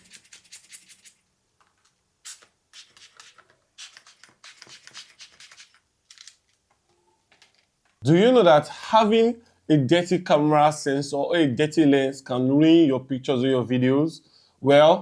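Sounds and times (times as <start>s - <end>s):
scratchy rubbing and rustling: 0.0s - 1.2s, 2.2s - 6.5s.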